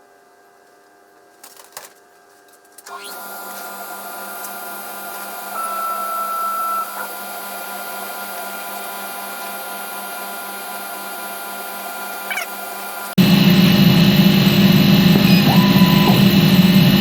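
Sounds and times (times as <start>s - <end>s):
electric machine humming: 2.9s - 17.0s
high whine: 12.3s - 17.0s.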